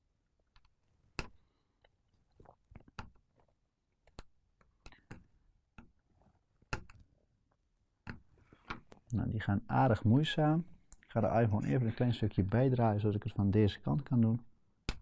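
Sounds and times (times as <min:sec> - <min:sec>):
prying tool clicks and taps: 0:00.5 - 0:01.4, 0:06.6 - 0:07.1.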